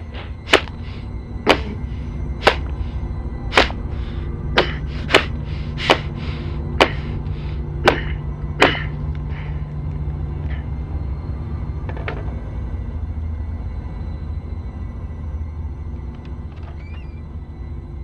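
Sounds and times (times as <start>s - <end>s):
steady low drone: 0.0s - 18.0s.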